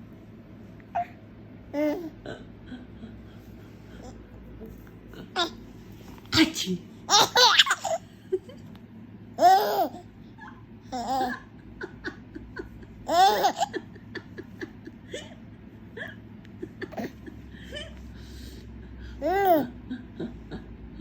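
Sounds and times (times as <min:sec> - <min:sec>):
baby laughing: 0:05.2 - 0:05.6, 0:07.1 - 0:08.1, 0:09.4 - 0:11.6, 0:13.0 - 0:14.3, 0:16.8 - 0:18.0, 0:19.2 - 0:20.3.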